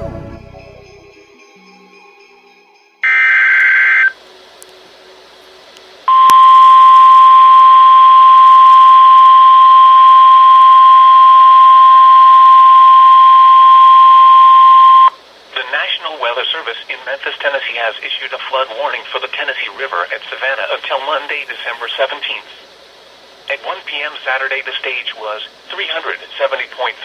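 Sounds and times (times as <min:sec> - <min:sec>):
steady warning alarm beep: 0:03.0 - 0:04.2, 0:06.1 - 0:15.2
two-tone data warble: 0:03.0 - 0:04.2, 0:06.1 - 0:15.2.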